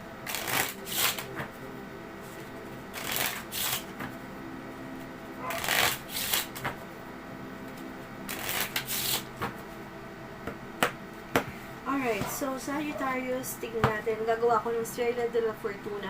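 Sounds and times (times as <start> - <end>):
playing cards shuffled by hand: 0.2 - 1.5, 2.3 - 4.2, 5.5 - 6.8, 7.7 - 9.6.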